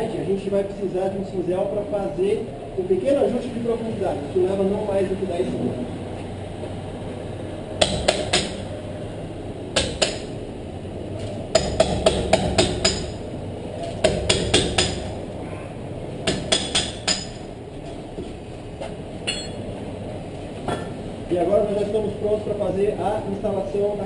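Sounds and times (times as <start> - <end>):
hammer striking chisel into brick: 7.8 - 8.6, 9.8 - 10.3, 11.5 - 13.2, 14.0 - 15.1, 16.2 - 17.4.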